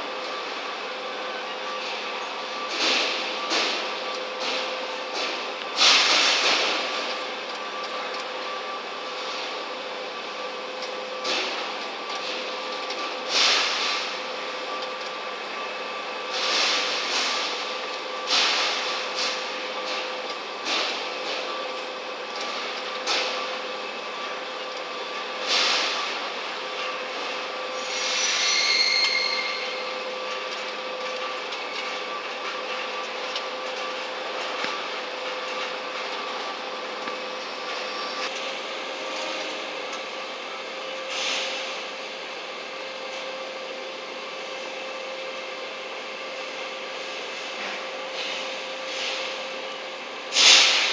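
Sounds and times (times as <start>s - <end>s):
hiss: 13.3s - 14.1s, 18.3s - 19.5s, 27.7s - 29.9s, 50.3s - 50.9s
high-pitched squeal: 27.8s - 30.0s.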